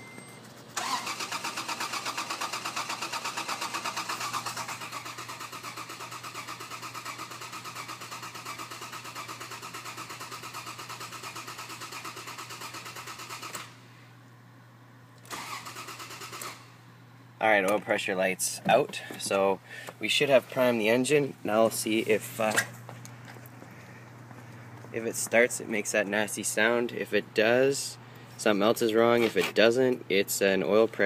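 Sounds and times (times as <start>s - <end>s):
engine cranking on starter: 0.2s - 13.8s, 15.2s - 16.7s.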